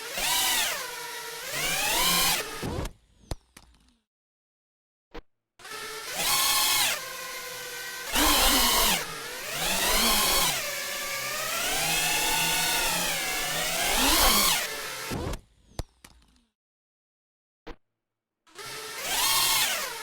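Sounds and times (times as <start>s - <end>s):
drone electric motors whining: 0.0s - 3.0s, 5.6s - 15.5s, 18.6s - 20.0s.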